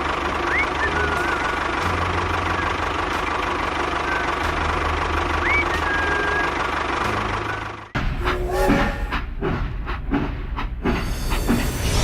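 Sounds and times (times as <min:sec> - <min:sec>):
small engine running: 0:00.0 - 0:08.0.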